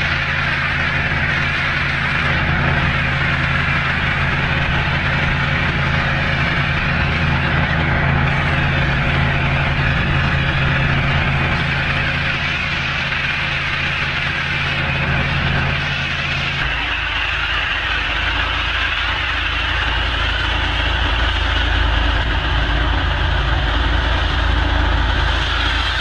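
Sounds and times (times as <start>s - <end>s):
pressure washer engine: 0.0s - 26.0s.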